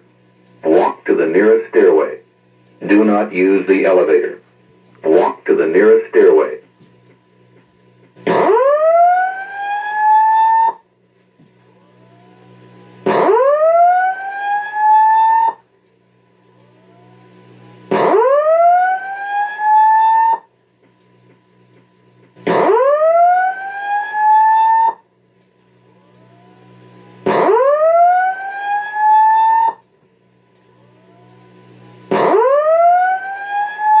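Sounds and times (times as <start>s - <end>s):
fire alarm whoop tone: 8.3s - 10.8s, 11.8s - 15.6s, 16.6s - 20.5s, 22.5s - 25.0s, 26.0s - 29.9s, 30.8s - 34.0s.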